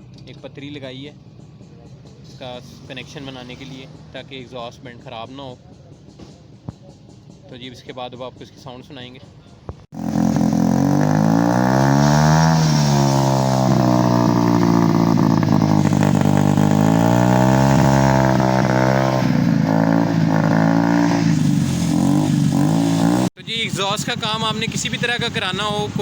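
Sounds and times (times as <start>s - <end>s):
motorcycle engine revving: 9.9s - 26.0s.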